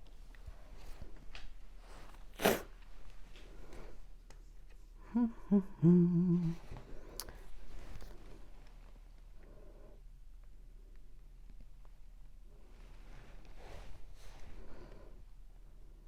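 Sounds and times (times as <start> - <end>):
woman humming: 5.0 - 7.2.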